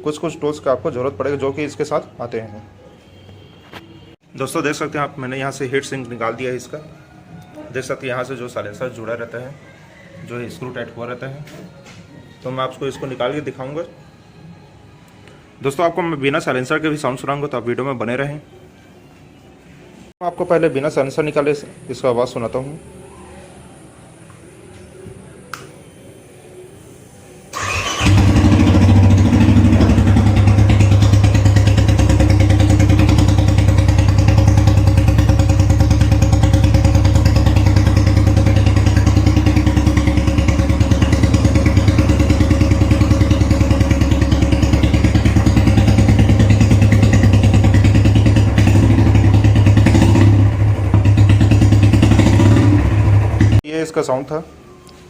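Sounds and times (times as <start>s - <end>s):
motorcycle engine starting: 26.9s - 53.6s
motorcycle engine idling: 27.6s - 53.6s.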